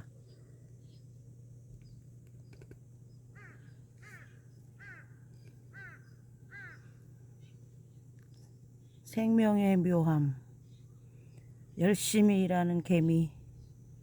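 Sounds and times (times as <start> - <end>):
faint low hum: 0.0 - 14.0
bird calling: 3.3 - 7.6.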